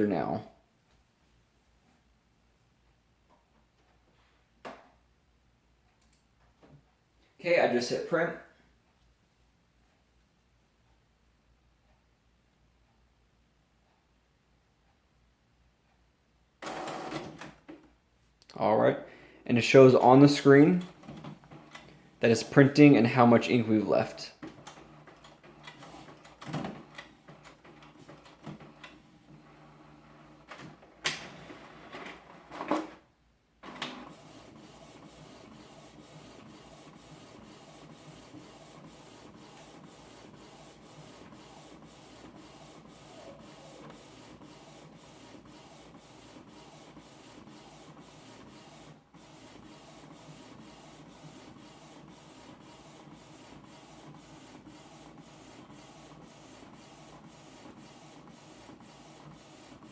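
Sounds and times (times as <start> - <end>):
inkjet print-head passes: 33.7 - 59.9.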